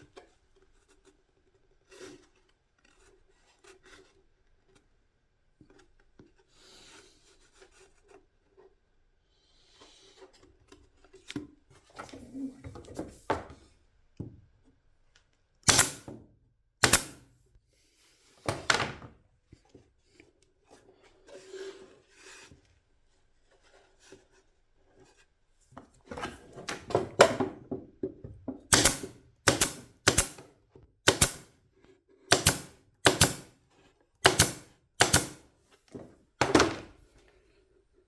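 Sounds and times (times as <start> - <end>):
sharp knocks: 15.7 - 16.2, 16.8 - 17.2, 28.7 - 30.4, 31.1 - 31.4, 32.3 - 33.5, 34.3 - 35.4.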